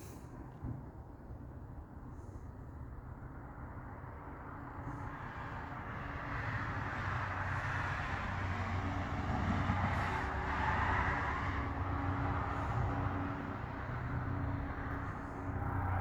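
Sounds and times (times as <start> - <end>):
vehicle engine humming: 11.3 - 16.0.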